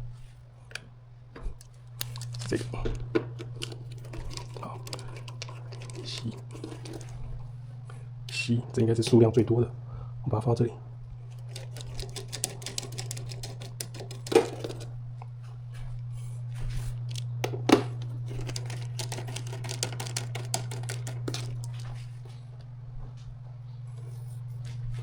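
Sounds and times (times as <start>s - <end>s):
steady low hum: 0.0s - 25.0s
screws and hand tool rattling: 3.5s - 7.1s, 11.3s - 14.9s, 18.3s - 21.7s.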